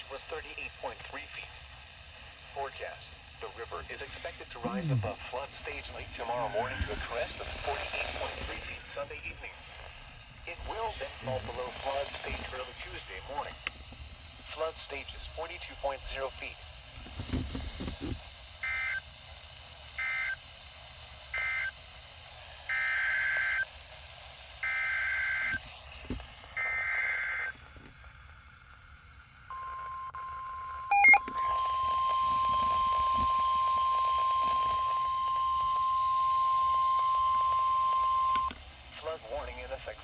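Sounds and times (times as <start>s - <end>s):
steady warning alarm tone: 3.2s - 13.4s, 29.5s - 38.6s.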